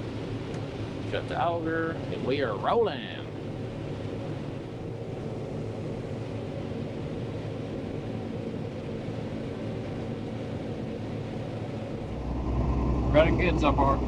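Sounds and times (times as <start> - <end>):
combine harvester droning: 0.0 - 14.0.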